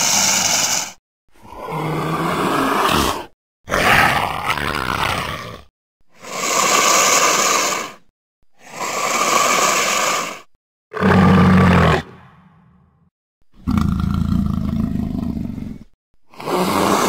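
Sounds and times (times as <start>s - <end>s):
raspy creature roars: 1.4s - 5.7s, 8.8s - 12.4s, 13.6s - 17.0s.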